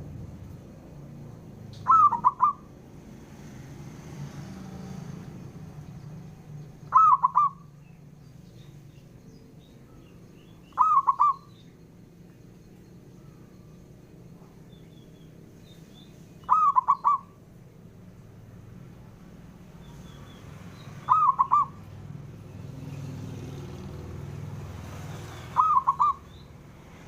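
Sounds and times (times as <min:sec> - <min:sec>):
dove cooing: 0:01.8 - 0:02.8, 0:06.9 - 0:07.8, 0:10.6 - 0:11.6, 0:16.4 - 0:17.4, 0:21.0 - 0:21.9, 0:25.2 - 0:26.3.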